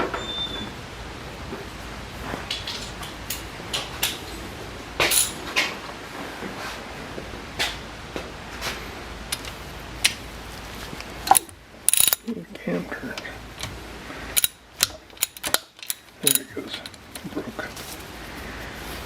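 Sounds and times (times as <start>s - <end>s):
metallic clicks of hand tools: 11.3s - 12.2s, 14.4s - 17.0s.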